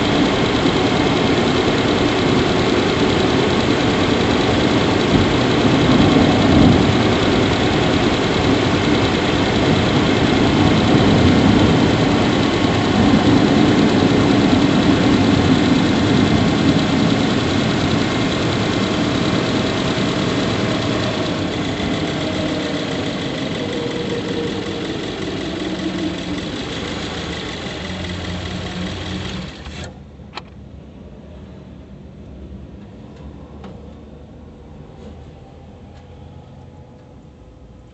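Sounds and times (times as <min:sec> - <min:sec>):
car engine idling: 0:00.0 - 0:29.9.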